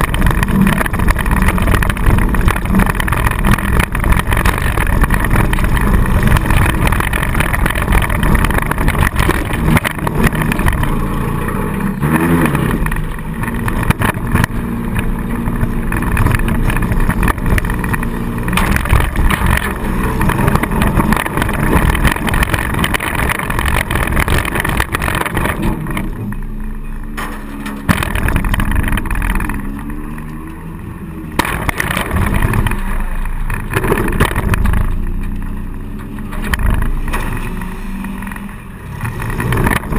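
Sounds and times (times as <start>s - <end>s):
car engine revving hard: 0.0s - 26.1s, 36.3s - 39.9s.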